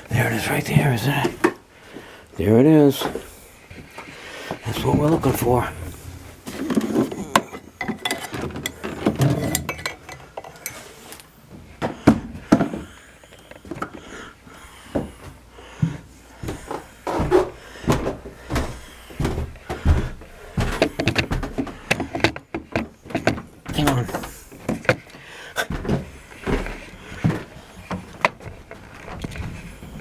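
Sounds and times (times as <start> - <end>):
plastic bucket clattering: 3.0 - 10.7, 16.6 - 30.0
dull thumps: 14.9 - 30.0.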